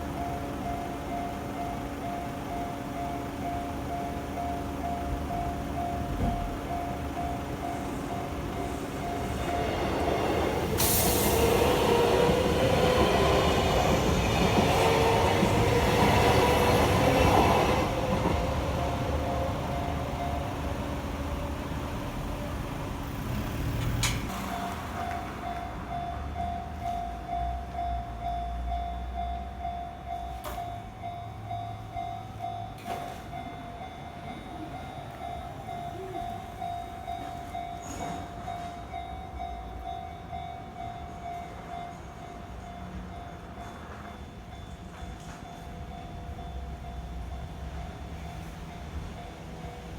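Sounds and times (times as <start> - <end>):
electric train passing: 0.0 - 49.9
level crossing alarm bell ringing: 0.1 - 21.3, 24.3 - 49.9
train wheels whining: 0.1 - 27.9.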